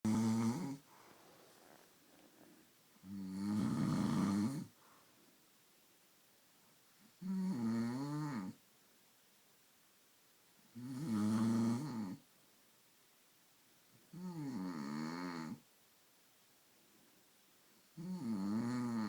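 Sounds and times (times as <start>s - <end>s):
man snoring loudly: 0.1s - 0.8s, 3.1s - 4.7s, 10.8s - 12.2s, 18.0s - 19.0s.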